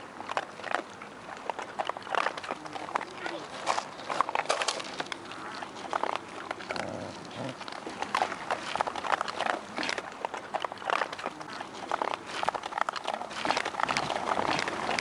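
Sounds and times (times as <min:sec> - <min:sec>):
dogs crunching dry food: 0:00.0 - 0:15.0.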